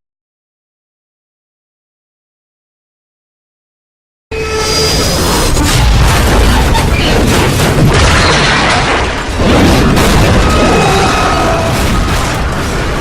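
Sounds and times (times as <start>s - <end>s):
loud rumbling and booming: 4.9s - 13.0s.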